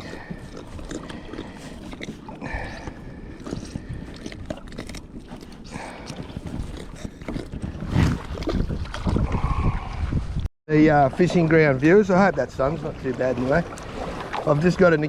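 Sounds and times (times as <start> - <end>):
water: 0.0 - 15.0
wind noise: 2.0 - 11.2.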